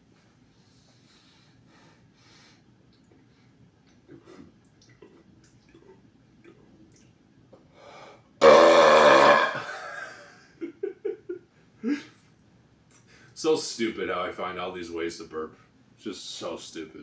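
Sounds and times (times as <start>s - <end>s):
man belching: 8.4s - 9.8s.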